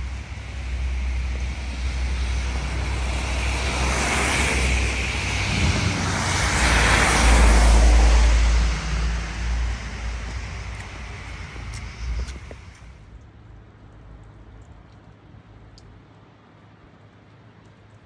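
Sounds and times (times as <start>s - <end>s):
cars passing: 0.0s - 13.0s
low traffic rumble: 0.0s - 16.1s.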